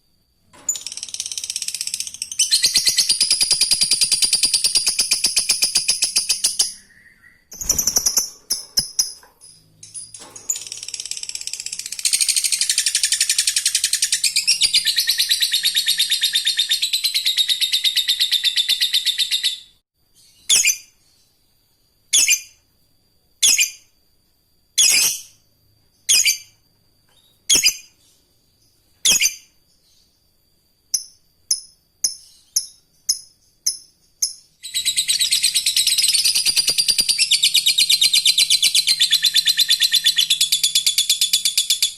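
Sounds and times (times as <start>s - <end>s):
sharp bird calls: 0.8s - 9.2s, 34.6s - 41.9s
bird chattering trill: 10.7s - 19.5s, 34.6s - 41.9s.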